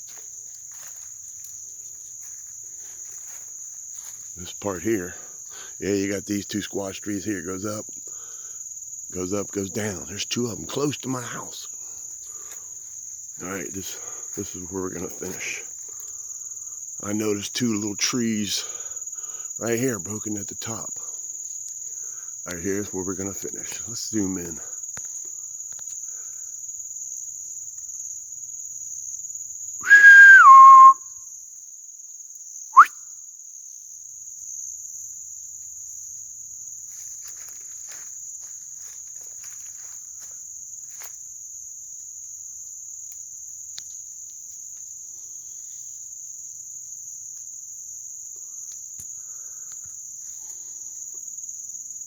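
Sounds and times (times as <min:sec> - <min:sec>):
crickets droning: 0:00.0 - 0:52.0
loud whistled call: 0:29.8 - 0:31.1, 0:32.7 - 0:33.0.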